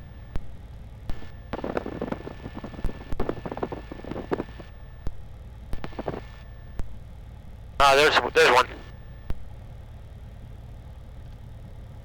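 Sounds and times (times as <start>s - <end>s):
aircraft engine droning: 0.0s - 12.0s
sharp clicks: 5.8s - 6.9s.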